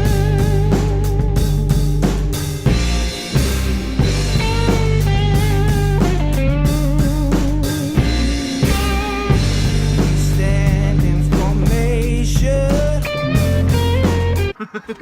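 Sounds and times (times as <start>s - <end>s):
rock music with electric guitar: 0.0s - 14.6s.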